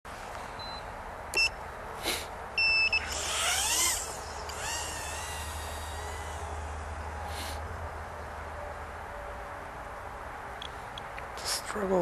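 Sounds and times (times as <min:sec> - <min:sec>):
short electronic beeps: 0:00.6 - 0:00.8, 0:02.6 - 0:03.1
drone motors whining: 0:02.6 - 0:07.6.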